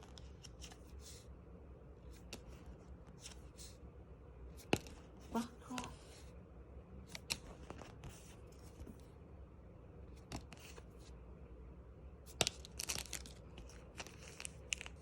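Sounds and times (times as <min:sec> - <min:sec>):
wrapper rustling: 0:12.5 - 0:15.0.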